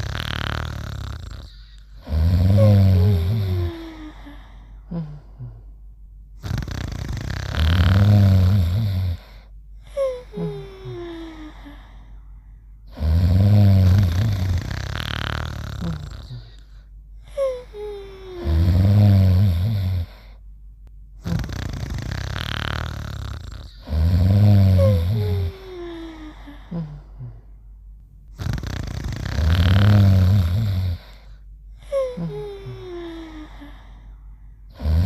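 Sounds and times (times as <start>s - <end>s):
cartoon snoring with whistle: 0.0s - 3.7s, 6.4s - 9.2s, 12.9s - 16.5s, 21.2s - 25.5s, 28.4s - 31.2s, 34.7s - 35.0s.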